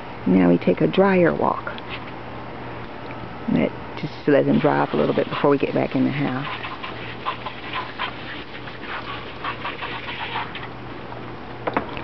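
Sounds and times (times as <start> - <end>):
dog panting: 6.4 - 10.6.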